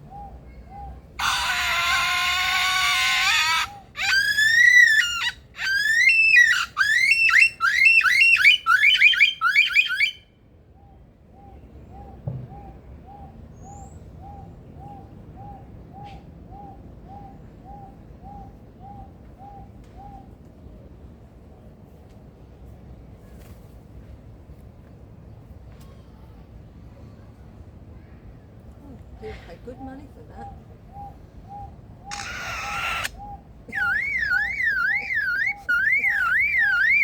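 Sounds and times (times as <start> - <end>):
lyrebird mimicking a car alarm: 6.1 - 10.2, 32.1 - 33.1, 33.7 - 37.0.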